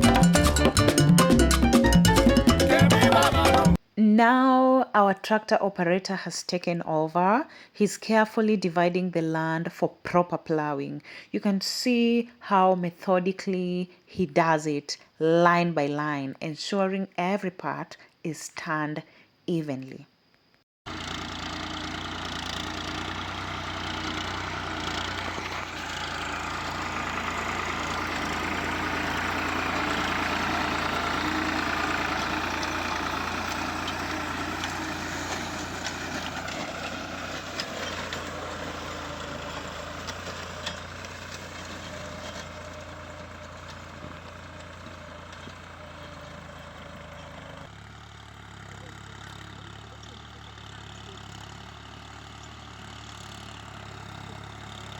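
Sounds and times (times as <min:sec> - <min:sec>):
tractor engine running: 0:00.0 - 0:03.8, 0:20.9 - 0:54.9.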